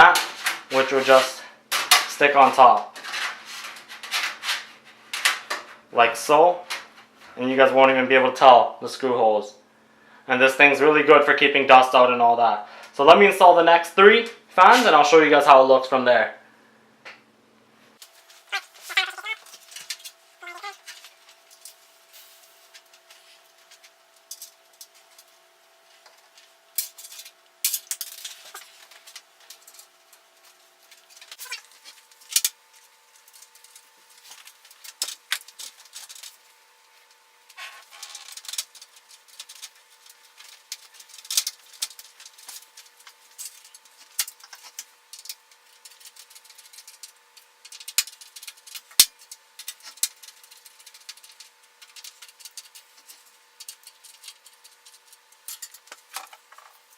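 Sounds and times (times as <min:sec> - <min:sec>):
plastic fan frames clattering: 0:00.0 - 0:02.3, 0:02.9 - 0:05.8, 0:26.0 - 0:32.6, 0:33.2 - 0:36.5, 0:37.9 - 0:56.9
faint steady hum: 0:00.0 - 0:56.9.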